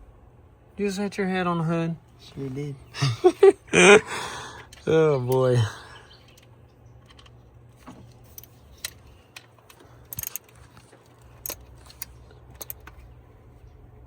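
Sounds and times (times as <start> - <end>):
metallic clicks of hand tools: 8.4 - 10.5.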